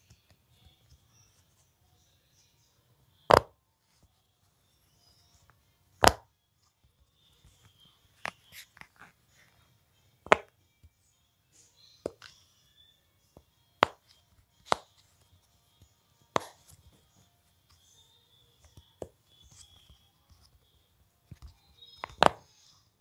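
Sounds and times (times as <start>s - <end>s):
faint rustling and handling noise: 3.6s - 10.1s.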